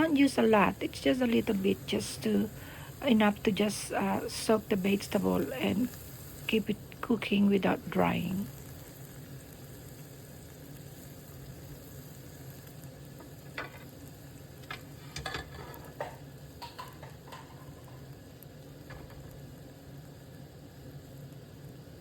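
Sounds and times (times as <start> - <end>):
meat sizzling in a pan: 0.0 - 22.0
utensil scraping a pan: 14.8 - 17.9.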